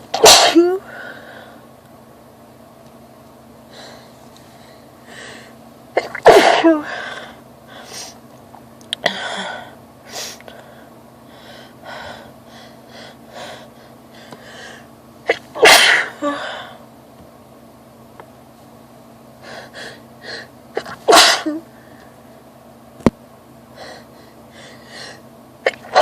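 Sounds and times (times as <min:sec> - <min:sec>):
woman sneezing: 0:00.2 - 0:00.8, 0:06.0 - 0:06.9, 0:15.3 - 0:16.4, 0:20.8 - 0:21.7, 0:25.7 - 0:26.0.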